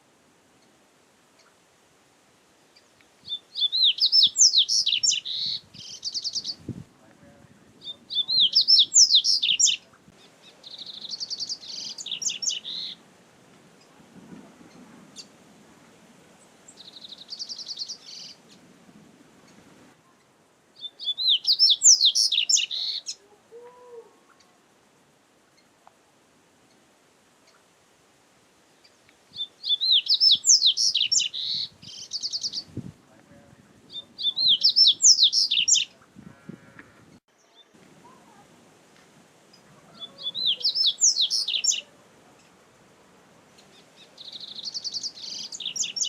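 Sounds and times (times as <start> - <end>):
bird singing high twittering notes: 3.3 - 6.7, 7.8 - 9.8, 20.8 - 23.2, 29.4 - 32.7, 33.9 - 36.0, 40.0 - 41.9, 43.6 - 46.0.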